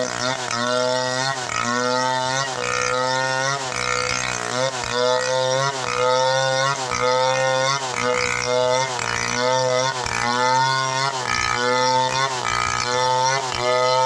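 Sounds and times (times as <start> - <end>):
chainsaw cutting wood: 0.0 - 14.0.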